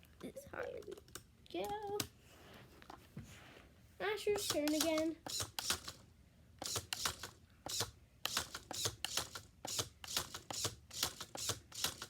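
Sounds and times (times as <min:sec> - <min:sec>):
toy buttons clicking: 0:04.4 - 0:05.4.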